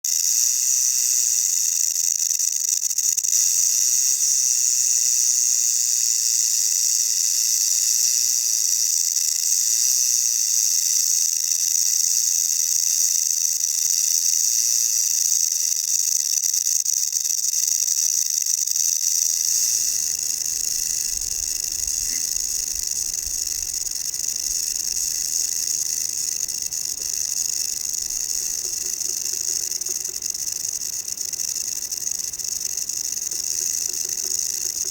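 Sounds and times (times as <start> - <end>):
rattlesnake tail rattle buzzing: 0.1 - 34.9
low rumbling noise: 19.4 - 31.0.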